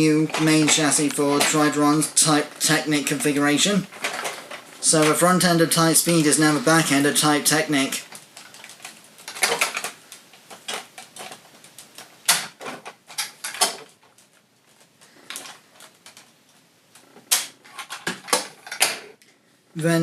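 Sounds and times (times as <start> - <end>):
plastic toy parts clicking: 8.1 - 14.3.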